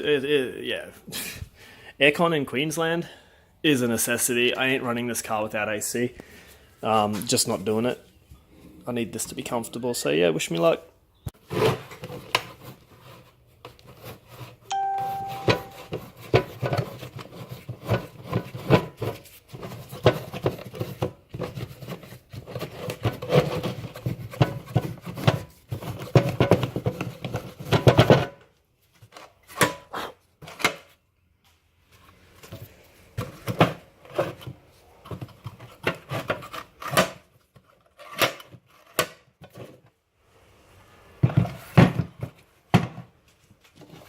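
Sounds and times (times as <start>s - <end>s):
short ringing tone: 14.7s - 16.0s
knocking and rattling of boxes: 15.6s - 28.5s, 32.5s - 37.3s, 41.2s - 43.2s.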